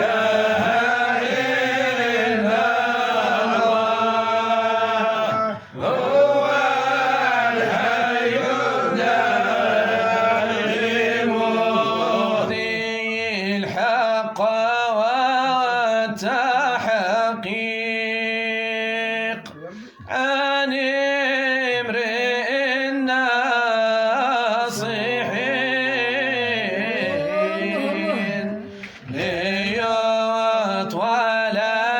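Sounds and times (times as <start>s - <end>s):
man chanting: 12.4s - 31.9s.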